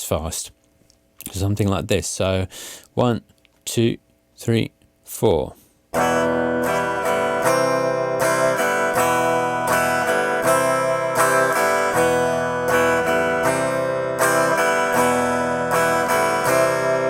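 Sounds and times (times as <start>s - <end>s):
guitar strumming chords: 5.9s - 17.0s.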